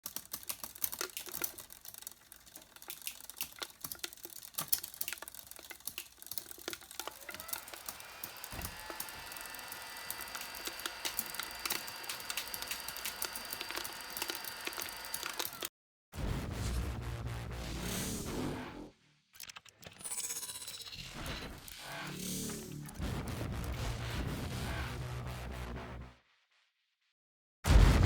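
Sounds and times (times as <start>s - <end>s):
small mechanical clicks and clacks: 0.0s - 15.7s, 19.4s - 23.2s.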